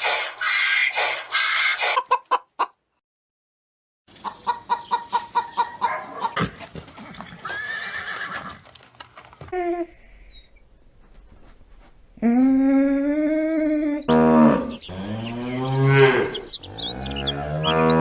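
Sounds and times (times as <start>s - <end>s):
chicken clucking: 0.0s - 2.8s, 4.1s - 7.5s, 14.7s - 18.0s
harsh screeching calls: 14.6s - 18.0s.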